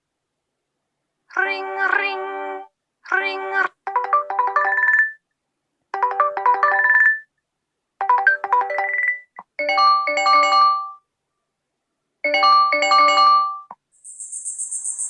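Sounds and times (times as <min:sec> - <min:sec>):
phone ringtone melody: 0:03.9 - 0:05.1, 0:06.0 - 0:07.2, 0:08.0 - 0:11.0, 0:12.2 - 0:13.7
higher-pitched ringtone melody: 0:03.9 - 0:05.2, 0:06.0 - 0:07.2, 0:08.0 - 0:11.0, 0:12.2 - 0:15.0.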